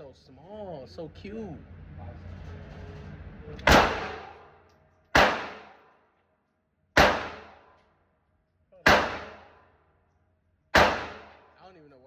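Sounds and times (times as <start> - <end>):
pistol shots ringing: 3.7 - 4.4, 5.2 - 5.8, 7.0 - 7.6, 8.8 - 9.5, 10.8 - 11.5.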